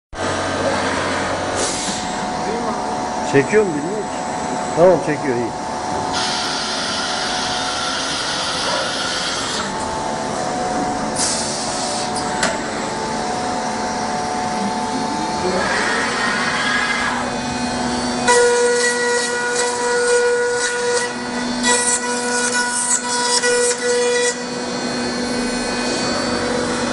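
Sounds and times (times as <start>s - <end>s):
milling machine motor running: 0.2s - 26.9s
motor whine: 0.2s - 26.9s.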